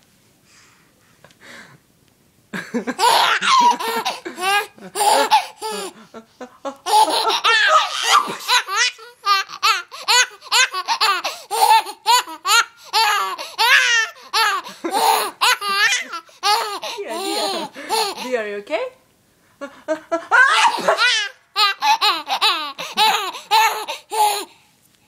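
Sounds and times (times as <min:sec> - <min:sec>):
baby giggling and laughing: 0:02.8 - 0:06.2, 0:06.8 - 0:18.4, 0:20.4 - 0:24.5.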